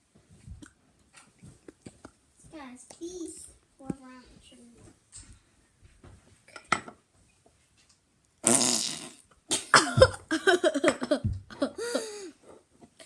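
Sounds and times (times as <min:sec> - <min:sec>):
slime squelching fart-like noise: 0:08.4 - 0:09.3.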